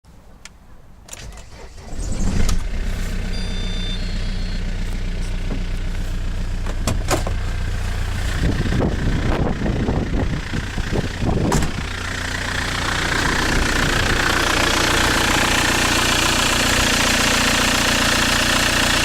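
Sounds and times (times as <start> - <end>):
car engine starting and idling: 1.1 - 19.0
engine knock: 8.4 - 19.0.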